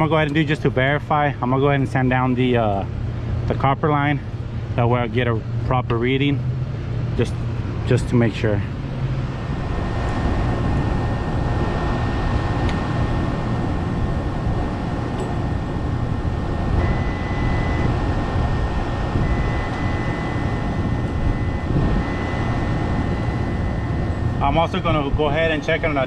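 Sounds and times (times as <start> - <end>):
air conditioner droning: 0.0 - 26.0
multimeter continuity beep: 16.7 - 26.0.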